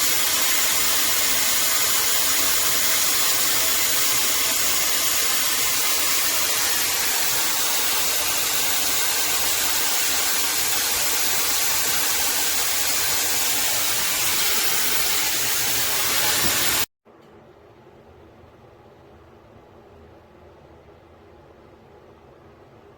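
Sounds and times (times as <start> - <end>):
hair dryer blowing: 0.0 - 16.9.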